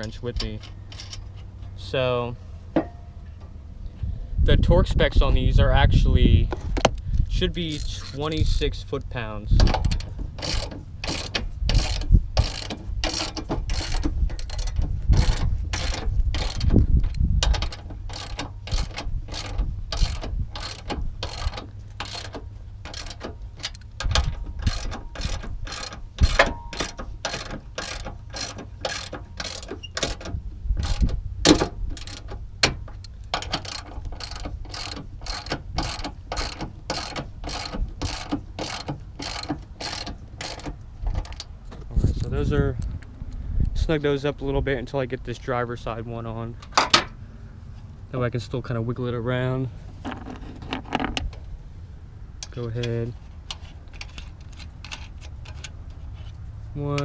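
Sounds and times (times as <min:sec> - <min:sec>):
hand ratchet clicking: 0:07.5 - 0:08.6, 0:09.6 - 0:41.5.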